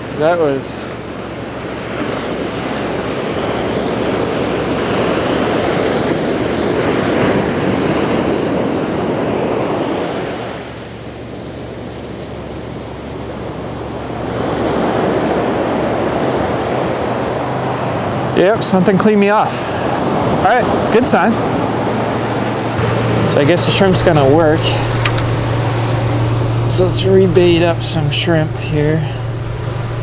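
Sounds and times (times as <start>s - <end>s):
ocean surf washing onto beach: 0.0s - 30.0s.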